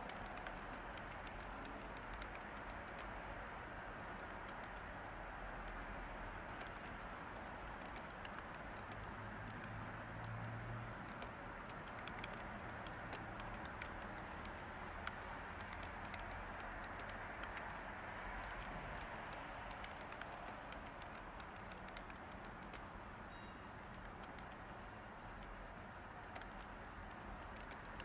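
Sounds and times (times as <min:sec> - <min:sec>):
keyboard keystrokes: 0:00.0 - 0:03.2, 0:04.1 - 0:04.9, 0:06.5 - 0:10.4, 0:11.0 - 0:22.9, 0:23.8 - 0:24.6, 0:26.2 - 0:28.0
white noise hiss: 0:00.0 - 0:28.0.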